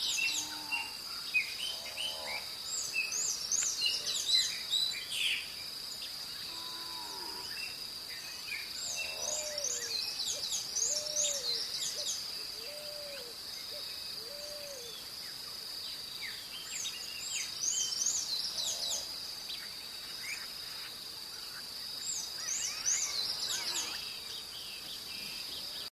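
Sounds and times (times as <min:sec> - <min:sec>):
high insect drone: 0:00.0 - 0:25.9
songbirds chirping: 0:00.0 - 0:25.9
lower arched bird calls: 0:08.8 - 0:13.4, 0:22.3 - 0:25.8.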